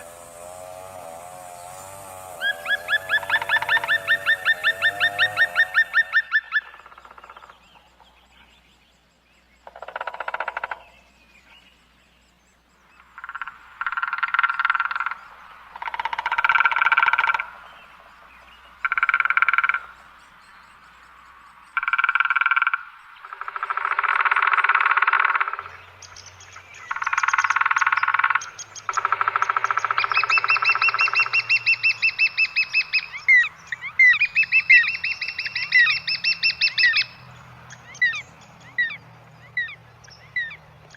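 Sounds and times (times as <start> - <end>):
frog croaking: 0.0 - 8.1, 9.6 - 11.0, 13.0 - 17.8, 18.8 - 20.1, 21.6 - 40.6
bird calling fast high notes: 1.4 - 6.8, 27.0 - 37.2.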